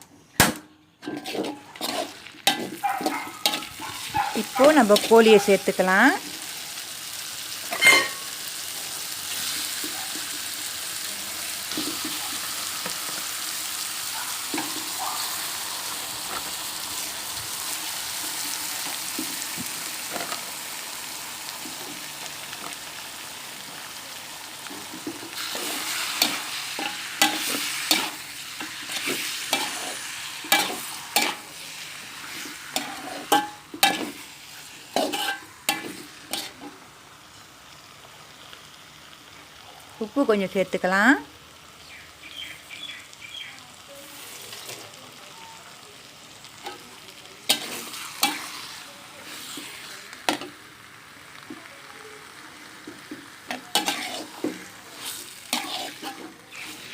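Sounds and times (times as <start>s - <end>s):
spoon scraping and knocking pan: 1.0s - 5.4s, 7.7s - 8.3s, 24.7s - 31.5s, 32.3s - 34.2s, 35.0s - 36.7s, 53.0s - 56.8s
chicken sizzling in a pan: 1.0s - 56.9s.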